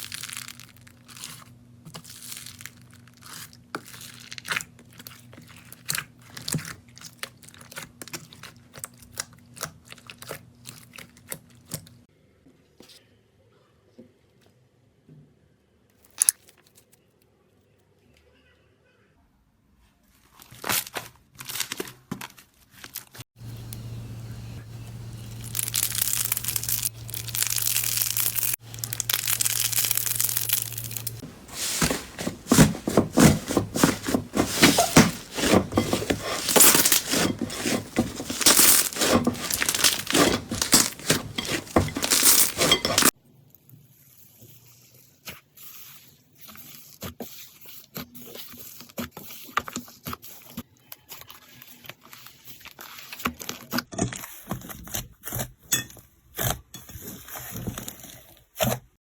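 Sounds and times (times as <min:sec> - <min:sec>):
slime crackling and popping: 0:00.0 - 0:11.8, 0:25.4 - 0:31.2.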